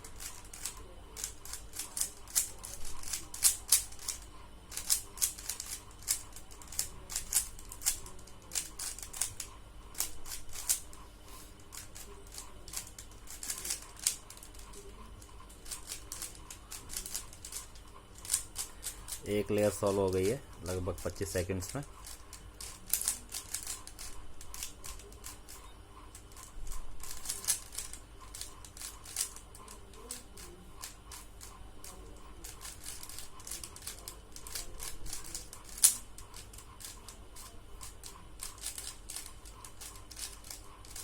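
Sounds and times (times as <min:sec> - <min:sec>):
puzzle cube plastic clicks: 0:21.0 - 0:25.6, 0:26.3 - 0:41.0.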